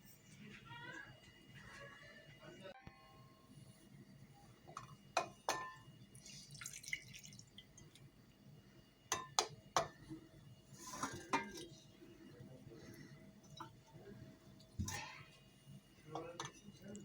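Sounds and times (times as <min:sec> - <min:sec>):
kitchenware clinking: 0:04.8 - 0:05.9, 0:10.8 - 0:11.9
liquid trickling and dripping: 0:06.1 - 0:08.2.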